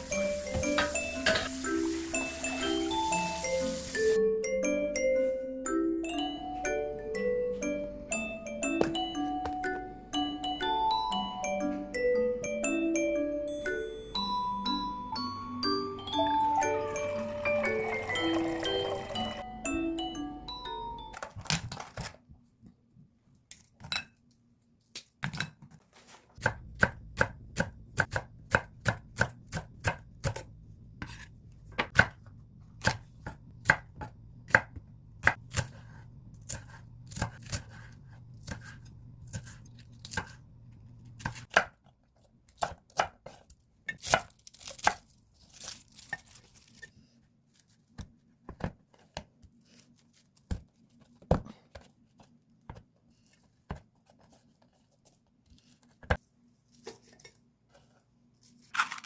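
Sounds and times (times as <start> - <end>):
knife chopping on cutting board: 26.4 - 32.2, 32.8 - 40.4.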